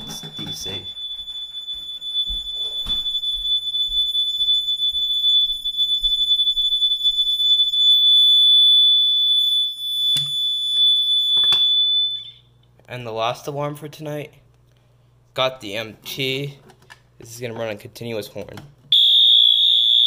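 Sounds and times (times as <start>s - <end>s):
fire alarm horn steady tone: 0.0s - 12.5s, 18.9s - 20.0s.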